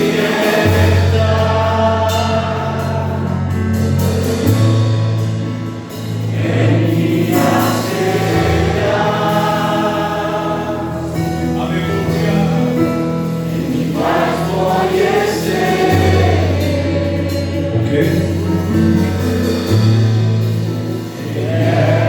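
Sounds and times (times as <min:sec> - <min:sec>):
choir singing in harmony: 0:00.0 - 0:22.0
instrumental backing with bass: 0:00.0 - 0:22.0.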